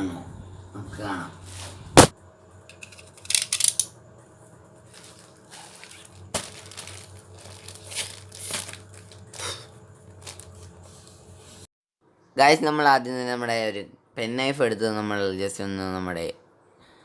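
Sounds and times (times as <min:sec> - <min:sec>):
sharp knock: 0:02.0 - 0:02.2
plastic packaging crinkling: 0:04.9 - 0:10.8.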